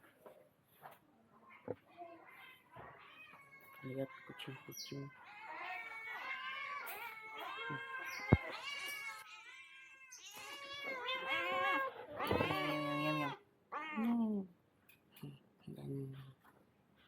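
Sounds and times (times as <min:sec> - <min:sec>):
cats meowing: 0:01.3 - 0:14.2.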